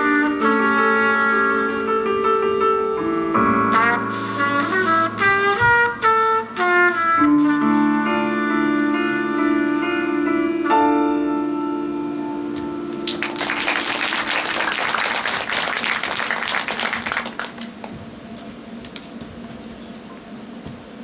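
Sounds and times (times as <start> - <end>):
piano chord ringing: 0.0 - 15.2
audience applause: 12.9 - 18.0.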